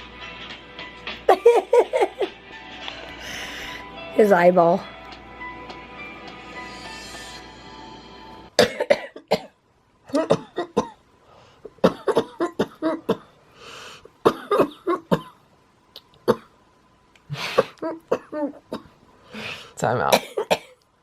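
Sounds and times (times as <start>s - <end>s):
steady background sound: 0.0s - 19.8s
person hacking coughs: 8.6s - 9.6s, 10.2s - 11.0s, 11.8s - 13.3s, 14.2s - 15.4s, 20.1s - 20.8s.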